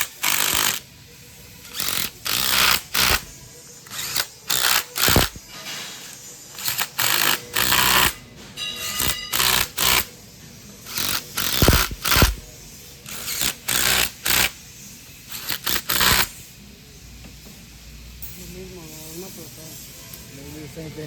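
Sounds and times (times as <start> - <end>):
hand tools striking metal: 3.9 - 10.1, 10.9 - 12.4.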